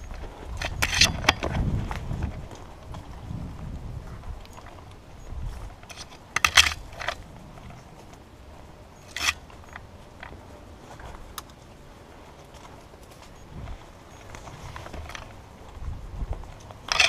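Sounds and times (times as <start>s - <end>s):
gear rattling: 0.0s - 3.1s, 4.3s - 8.2s, 9.0s - 11.4s, 14.1s - 17.0s
sharp clatters: 16.4s - 17.0s.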